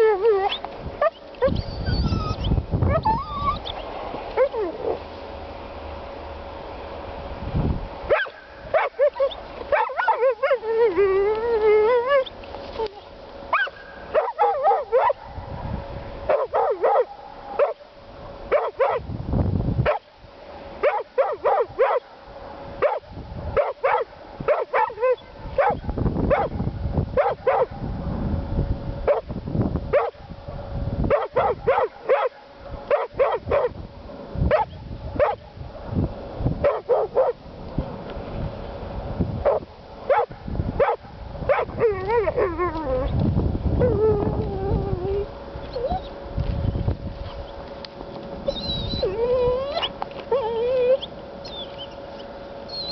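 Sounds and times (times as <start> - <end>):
dog whining: 0.0 - 3.8, 4.4 - 5.0, 9.0 - 15.1, 41.5 - 43.2, 43.8 - 46.2, 48.4 - 52.0, 52.7 - 52.9
dog yipping and barking: 0.0 - 3.8, 4.4 - 5.0, 8.1 - 15.3, 16.3 - 17.8, 18.5 - 19.0, 19.8 - 20.0, 20.8 - 22.1, 22.8 - 23.0, 23.6 - 26.6, 27.2 - 27.8, 29.9 - 30.2, 31.1 - 33.7, 34.5 - 35.4, 36.6 - 37.4, 39.4 - 43.2, 43.8 - 46.1, 48.5 - 52.0, 52.7 - 52.9.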